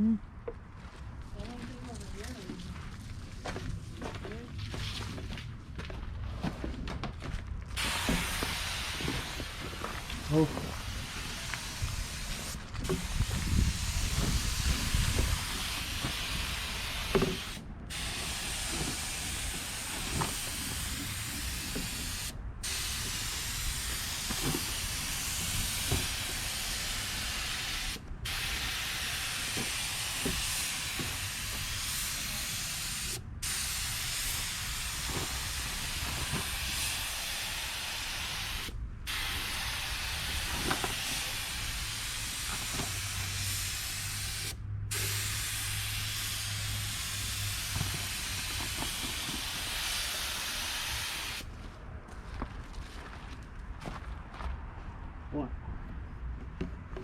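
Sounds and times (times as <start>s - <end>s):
paint spray gun hissing: 7.8s - 51.4s.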